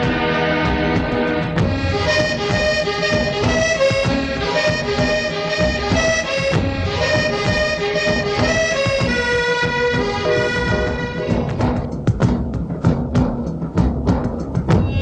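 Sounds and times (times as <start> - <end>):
instrumental background music: 0.0 - 15.0.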